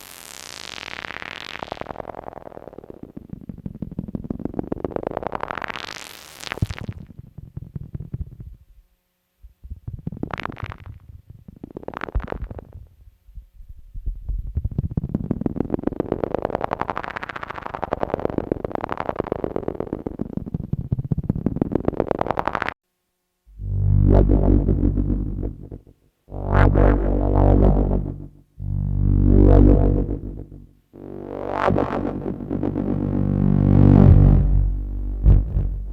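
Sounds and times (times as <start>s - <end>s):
synthesizer drone with pulsing: 23.5s - 35.9s.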